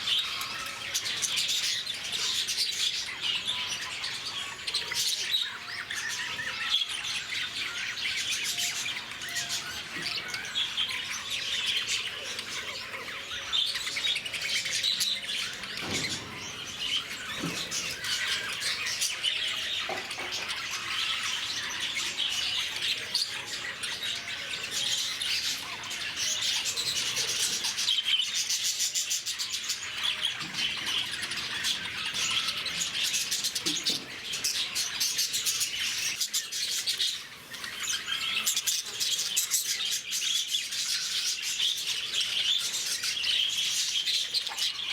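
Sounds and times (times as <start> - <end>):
birds chirping and squawking: 0.0 - 44.9.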